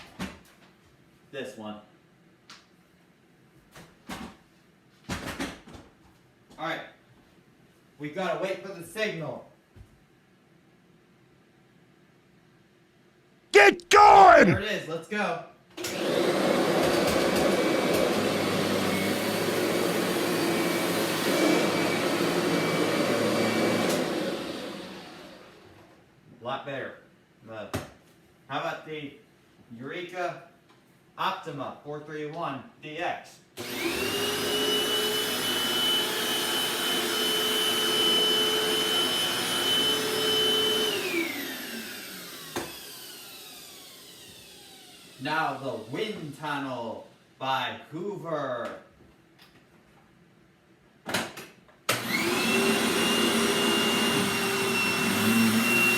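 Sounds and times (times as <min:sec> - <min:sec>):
vacuum cleaner running: 0:15.8 - 0:25.6, 0:33.6 - 0:45.2, 0:51.9 - 0:55.9.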